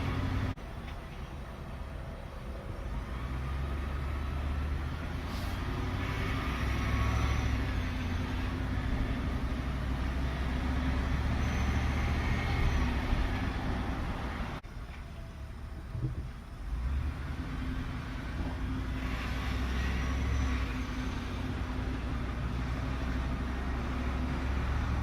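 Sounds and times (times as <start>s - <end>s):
large vehicle engine rumble: 0.0s - 25.0s.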